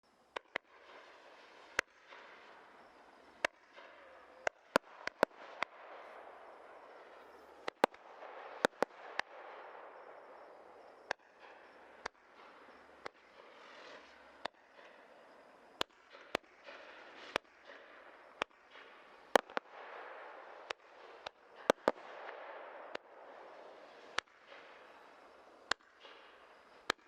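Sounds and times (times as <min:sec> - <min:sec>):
firework pops: 0:00.3 - 0:02.7, 0:03.3 - 0:06.2, 0:07.2 - 0:27.0
firework hiss: 0:12.4 - 0:15.4.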